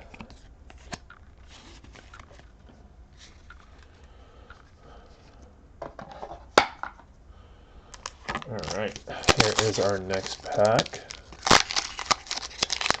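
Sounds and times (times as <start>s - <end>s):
trading cards and wrappers rustling: 0.0s - 2.6s, 8.0s - 13.0s.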